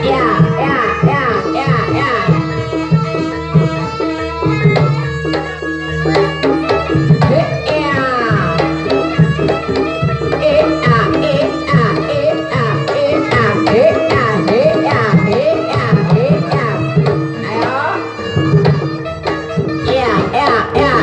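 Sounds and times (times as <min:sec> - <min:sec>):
hand drums beating: 0:00.0 - 0:21.0.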